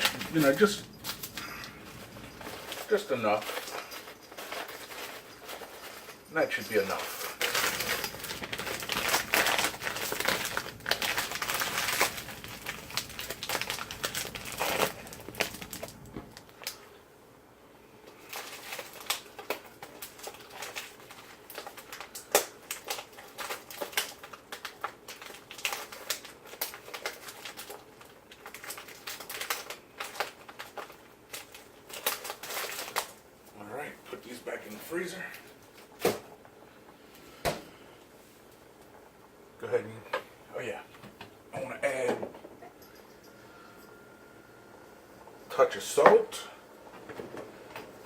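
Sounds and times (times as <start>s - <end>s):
plastic bag crinkling: 0.0s - 17.0s, 18.0s - 36.3s.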